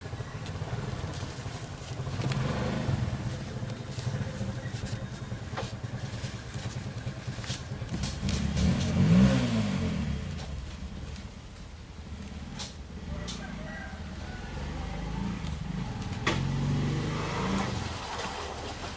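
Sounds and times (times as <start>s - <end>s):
vehicle passing by: 0.0s - 11.3s, 12.0s - 18.9s
vehicle engine running: 0.0s - 18.9s.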